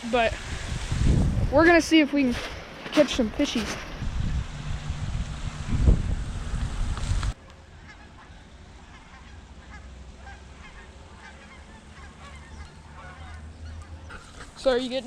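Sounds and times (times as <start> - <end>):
steady low rumble: 0.2 - 14.6
birds calling: 6.4 - 15.0.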